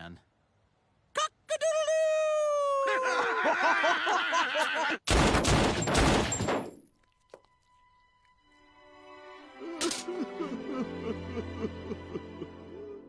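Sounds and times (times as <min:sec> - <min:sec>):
rapid gunfire: 0:05.1 - 0:06.4.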